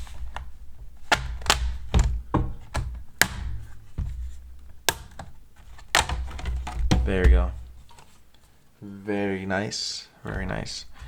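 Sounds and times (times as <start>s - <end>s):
plastic clips clicking loose: 0.0s - 3.7s, 4.6s - 7.2s.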